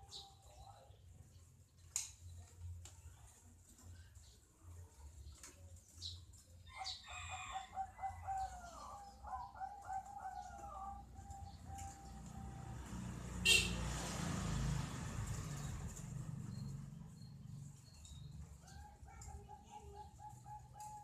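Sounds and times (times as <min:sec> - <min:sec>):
dove cooing: 0:07.5 - 0:13.0, 0:18.6 - 0:21.0.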